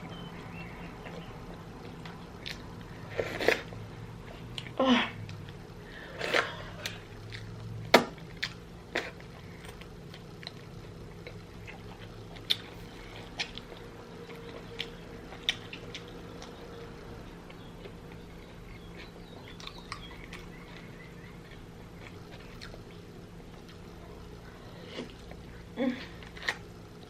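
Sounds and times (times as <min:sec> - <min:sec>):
wet chewing and lip smacks: 0:08.2 - 0:24.0.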